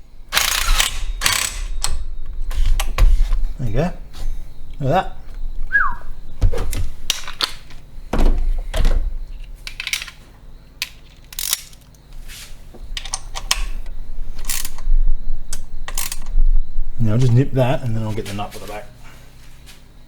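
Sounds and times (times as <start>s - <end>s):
hand tools and metal parts clicking: 0.3s - 3.5s, 6.7s - 7.8s, 8.6s - 12.0s, 12.9s - 14.9s, 15.5s - 16.4s.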